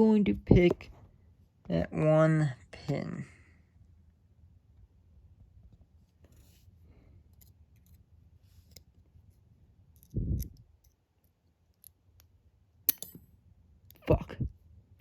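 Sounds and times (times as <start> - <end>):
lock pick ticking on pins: 12.9 - 13.2.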